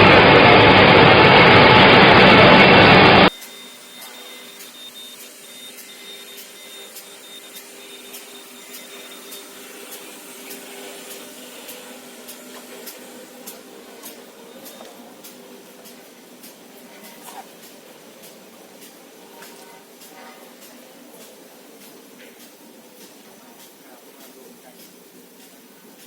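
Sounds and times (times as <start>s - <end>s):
loud rushing noise: 0.0s - 3.3s.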